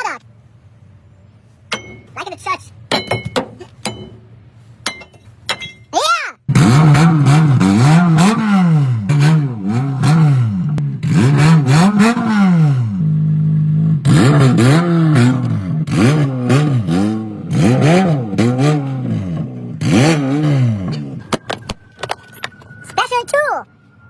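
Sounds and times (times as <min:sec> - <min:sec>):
engine revving: 0:06.5 - 0:21.3.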